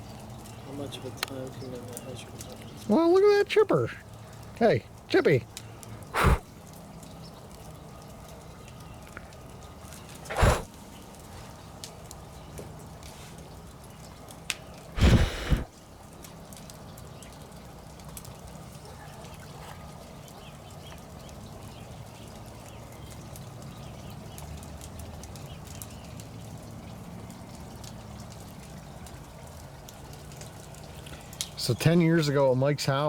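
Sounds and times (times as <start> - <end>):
campfire crackling and popping: 0.0 - 32.4
brief rush of noise: 15.0 - 15.7.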